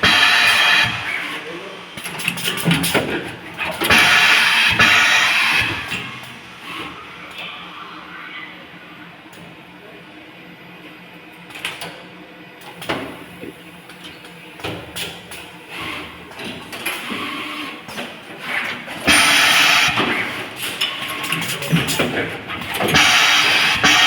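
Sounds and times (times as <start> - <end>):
machine hum: 0.0 - 11.5.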